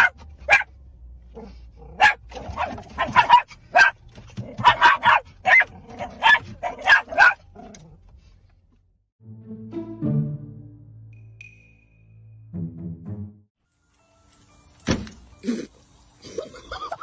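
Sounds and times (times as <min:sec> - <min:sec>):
dog barking: 0:00.0 - 0:00.7, 0:01.4 - 0:07.5.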